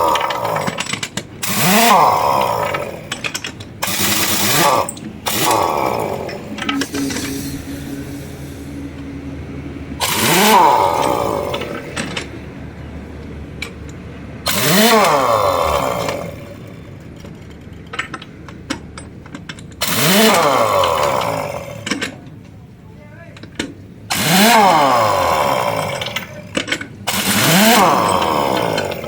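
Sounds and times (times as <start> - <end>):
motor spinning up and down: 1.4 - 3.2, 3.8 - 12.3, 14.5 - 16.7, 24.1 - 26.2, 27.1 - 29.0.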